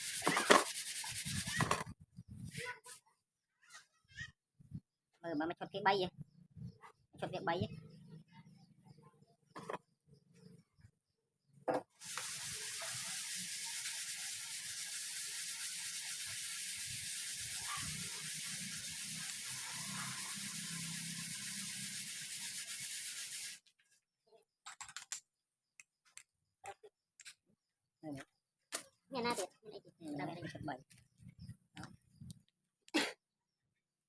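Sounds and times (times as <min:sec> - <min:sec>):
steady hiss of spray from nozzle: 0:12.0 - 0:23.6.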